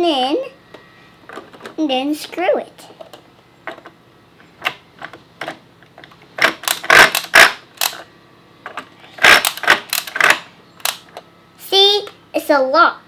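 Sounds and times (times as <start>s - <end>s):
plastic toy parts clicking: 5.0s - 8.0s, 8.7s - 11.2s.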